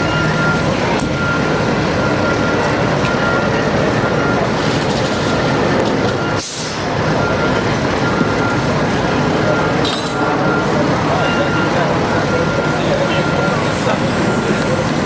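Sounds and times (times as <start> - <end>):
faint high beeping: 0.0 - 15.0
heavy traffic rumble: 0.0 - 15.0.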